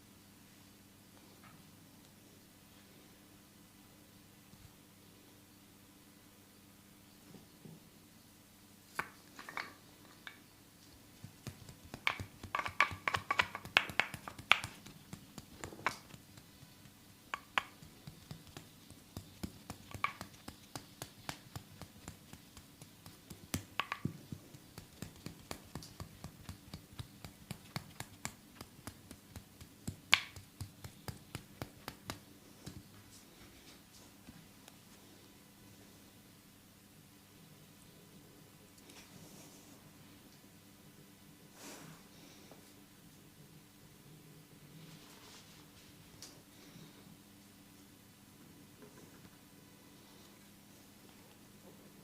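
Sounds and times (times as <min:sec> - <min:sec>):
hands clicking and patting on skin: 0:10.9 - 0:32.9.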